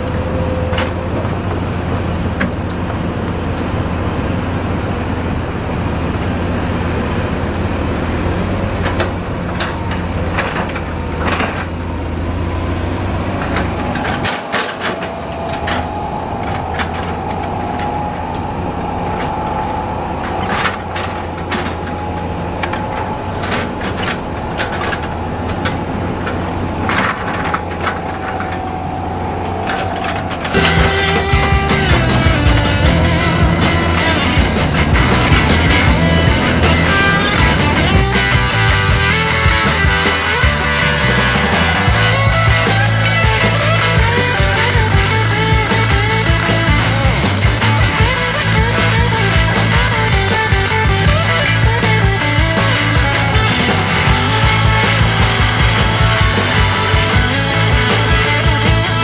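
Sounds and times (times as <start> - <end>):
diesel machinery engine drone: 0.0 - 59.0
steady whine: 0.0 - 59.0
clanks and knocks: 8.8 - 12.3, 13.0 - 59.0.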